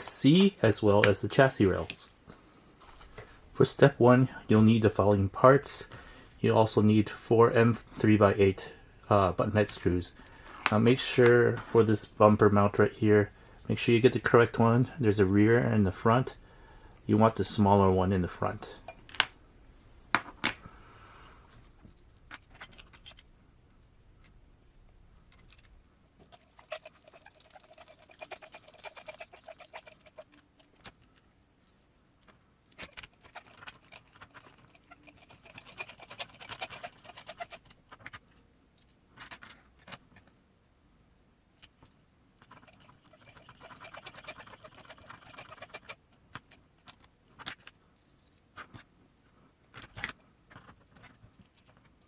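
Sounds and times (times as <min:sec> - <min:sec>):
screws driven with clicking rattling: 0:26.3 - 0:31.0, 0:32.7 - 0:38.2, 0:42.4 - 0:48.4.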